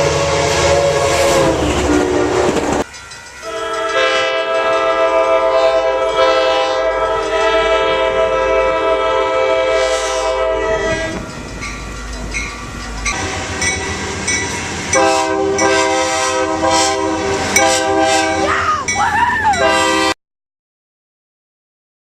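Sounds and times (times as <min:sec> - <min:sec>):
train air horn: 0:00.0 - 0:02.6, 0:03.4 - 0:11.3, 0:13.1 - 0:18.7, 0:19.6 - 0:20.2
wheels clattering on rails: 0:11.0 - 0:16.0.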